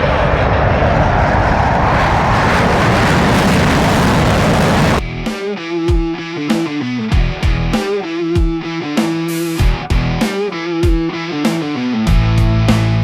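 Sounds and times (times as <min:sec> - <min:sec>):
airplane engine noise: 0:00.0 - 0:05.0
rock music with electric guitar: 0:04.8 - 0:13.0.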